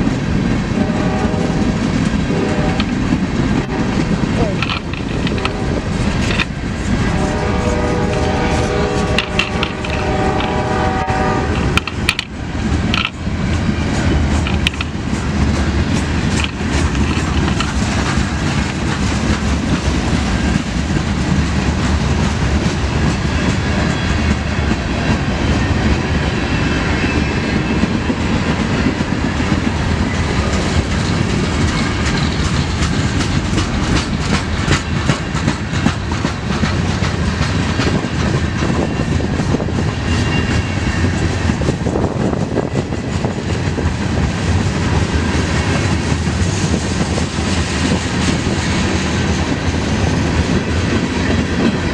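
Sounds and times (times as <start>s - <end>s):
rumble of rolling freight cars: 0.0s - 51.9s
locomotive horn chord: 0.8s - 3.0s, 7.1s - 11.7s
wheels clicking over rail joints: 1.6s - 26.3s, 27.1s - 51.9s.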